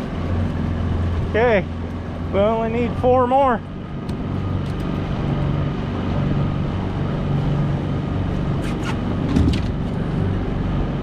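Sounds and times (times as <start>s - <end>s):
boat motor running: 0.0s - 11.0s.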